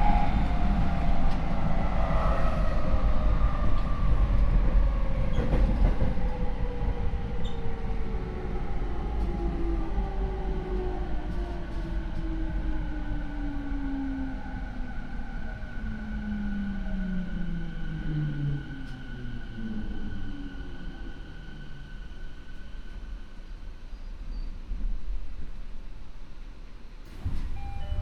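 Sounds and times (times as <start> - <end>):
wheels rumbling on rail: 0.0 - 13.8, 27.1 - 28.0.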